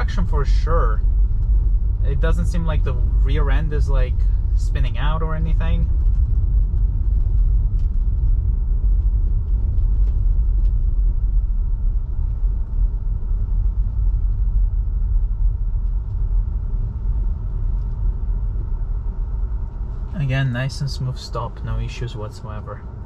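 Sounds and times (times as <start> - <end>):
tyre noise on snowy road: 0.0 - 23.0.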